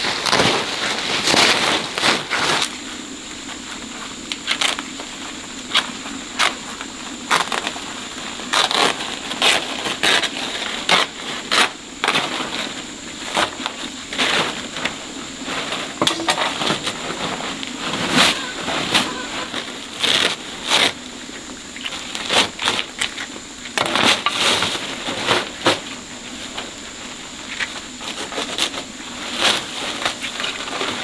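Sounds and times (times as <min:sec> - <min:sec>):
crunching and snapping: 0:08.4 - 0:12.7.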